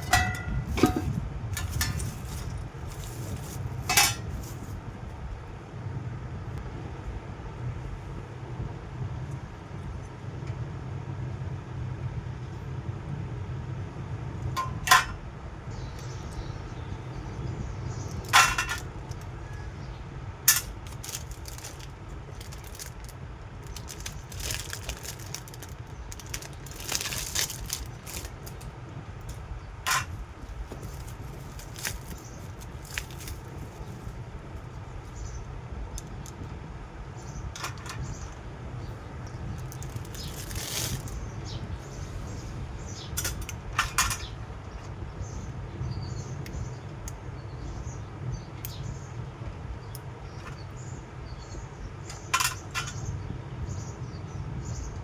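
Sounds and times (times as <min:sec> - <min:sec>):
small hard objects clinking: 0:00.0 - 0:04.7, 0:18.1 - 0:19.2, 0:20.5 - 0:28.7, 0:29.3 - 0:34.0, 0:39.6 - 0:41.2, 0:52.1 - 0:53.0.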